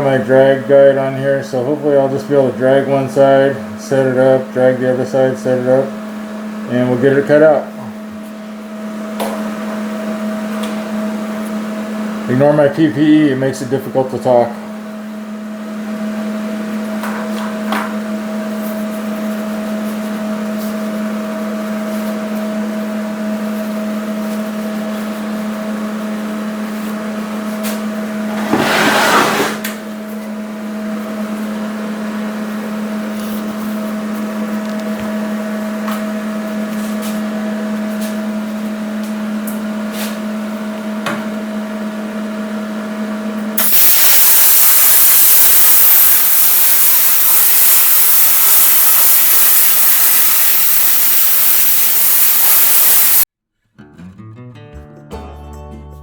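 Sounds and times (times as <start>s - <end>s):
shop equipment humming: 26.8s - 53.3s
blast of air: 43.6s - 53.2s
plasma cutter hissing: 43.6s - 53.2s.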